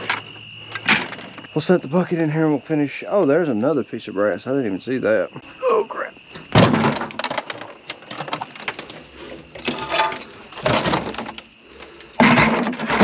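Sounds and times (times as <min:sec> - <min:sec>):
scrap metal clinking and scraping: 0:07.1 - 0:11.5, 0:12.1 - 0:13.0.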